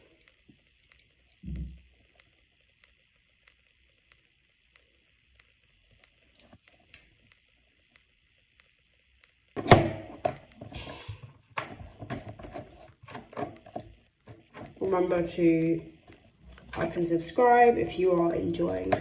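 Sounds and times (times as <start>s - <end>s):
sharp thunk: 9.6s - 10.2s.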